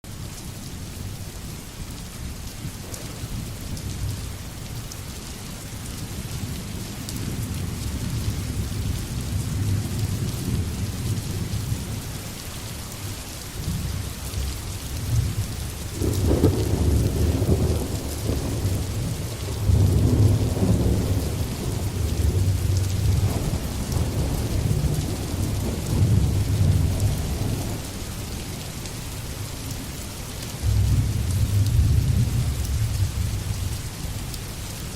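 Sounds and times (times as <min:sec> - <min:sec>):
steady rain: 0:00.0 - 0:34.9
rolling thunder: 0:02.8 - 0:04.1, 0:13.6 - 0:28.0, 0:30.6 - 0:33.6.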